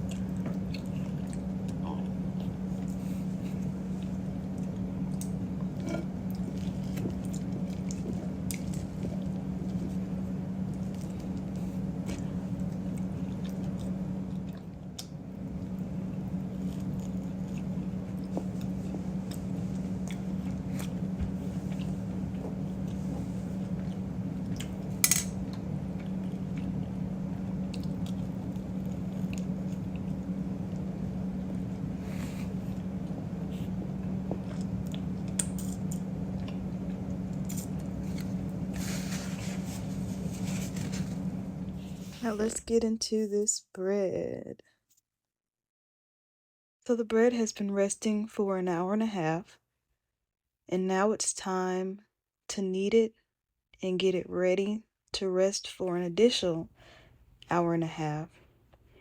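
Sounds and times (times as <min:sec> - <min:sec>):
chewing: 0:00.0 - 0:03.0, 0:03.6 - 0:09.8, 0:12.2 - 0:15.1, 0:16.2 - 0:21.0, 0:27.6 - 0:30.8
steady low hum: 0:00.0 - 0:44.6.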